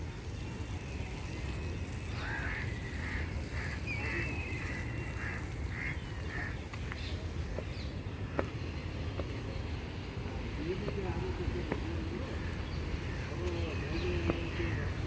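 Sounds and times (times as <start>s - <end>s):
bird calling: 2.1s - 8.5s.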